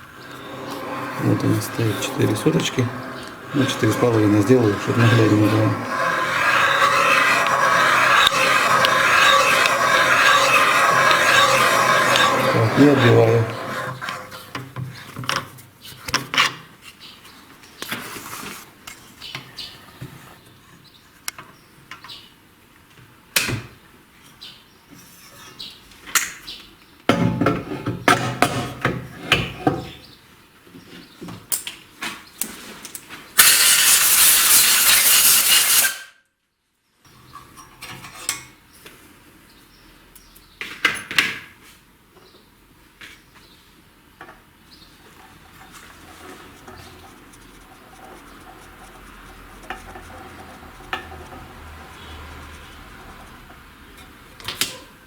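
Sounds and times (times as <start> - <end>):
rough scraping: 0.0 - 14.5, 33.4 - 36.0, 45.2 - 53.7
loud steady hiss: 33.4 - 36.0.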